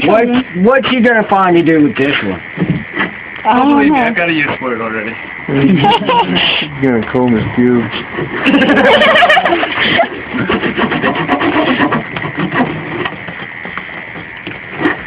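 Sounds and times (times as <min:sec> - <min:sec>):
loud laughter: 0:05.5 - 0:06.5, 0:08.4 - 0:10.5
clicks and scraping: 0:09.6 - 0:15.0.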